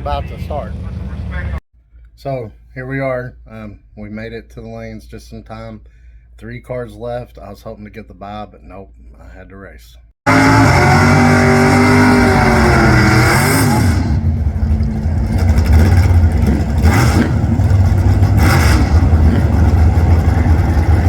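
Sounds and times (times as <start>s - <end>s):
race car engine revving: 10.3s - 21.0s.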